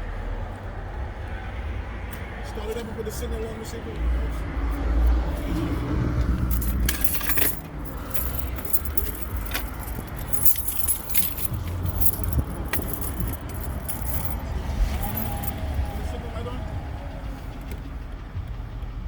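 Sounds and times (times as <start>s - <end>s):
keys jangling: 6.4s - 15.8s.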